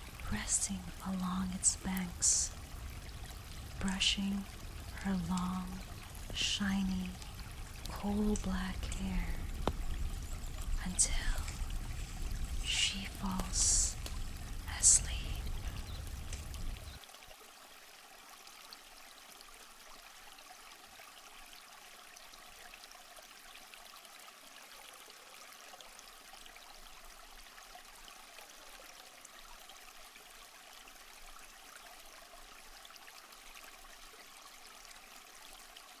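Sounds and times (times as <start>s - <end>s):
hiss with fine crackles: 5.7s - 17.0s.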